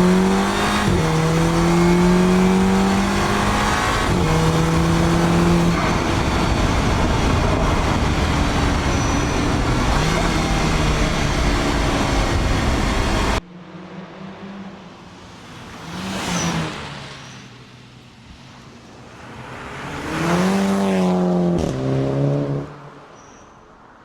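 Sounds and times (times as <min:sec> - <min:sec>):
car engine accelerating hard: 0:00.0 - 0:13.4.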